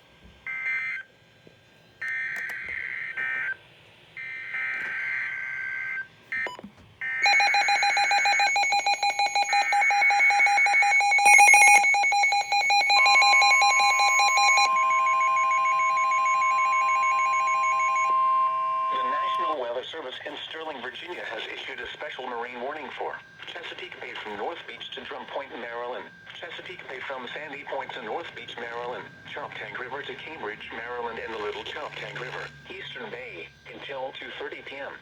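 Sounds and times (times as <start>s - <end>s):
rapidly pulsing alarm beep: 4.2s - 19.6s, 22.1s - 34.9s
steady alarm tone: 4.2s - 19.6s, 22.2s - 33.8s.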